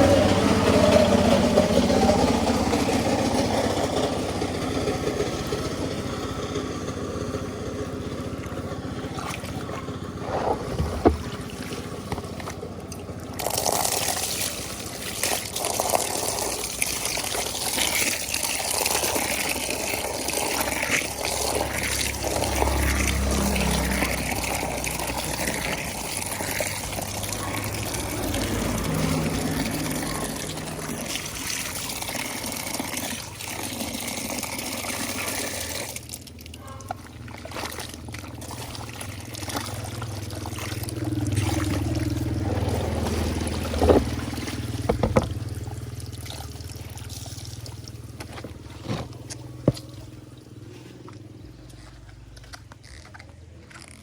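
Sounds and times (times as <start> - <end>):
water running and pouring: 8.4 - 50.6
sharp knocks: 44.9 - 45.4
handling sounds: 48.1 - 54.0.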